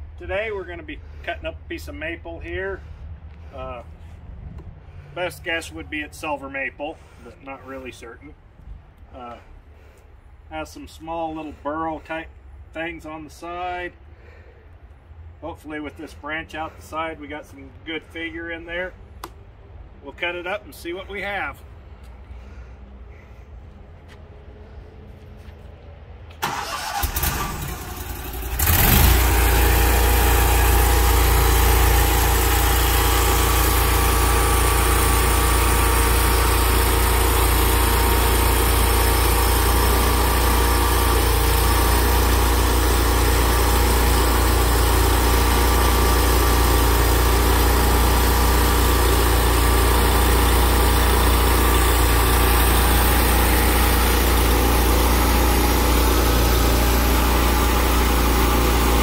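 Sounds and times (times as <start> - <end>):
engine cranking and starting: 26.3 - 59.0.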